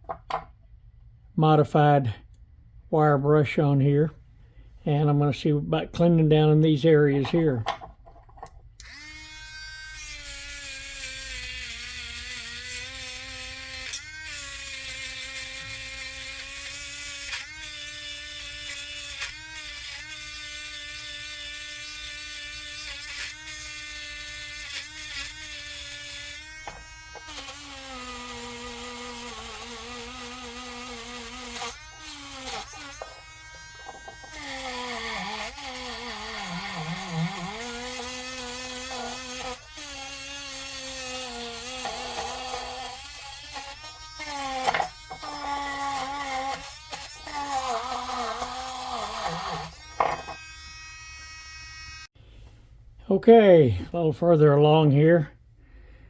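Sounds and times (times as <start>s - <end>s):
rotary tool wire-brushing steel: 10.0s - 52.1s.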